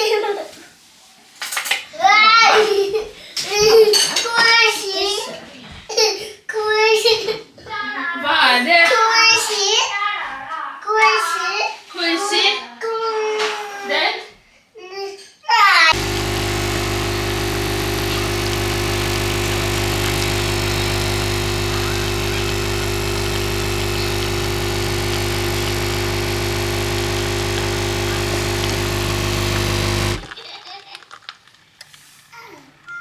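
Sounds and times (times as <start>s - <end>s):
electric motor humming: 15.9s - 30.4s.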